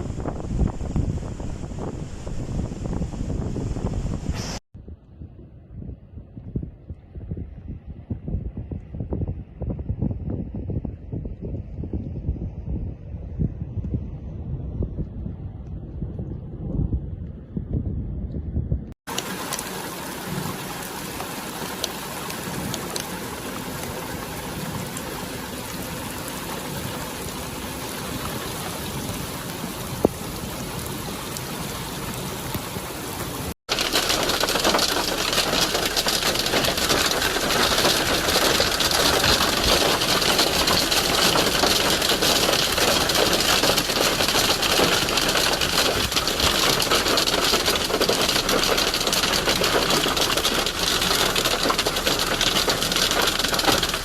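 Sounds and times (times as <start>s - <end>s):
heavy rain: 19.1s - 54.0s
running water: 19.1s - 54.0s.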